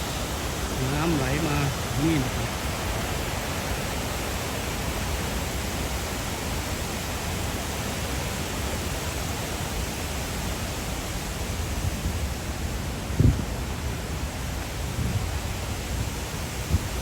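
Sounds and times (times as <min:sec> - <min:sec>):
waterfall rushing: 0:00.0 - 0:11.4.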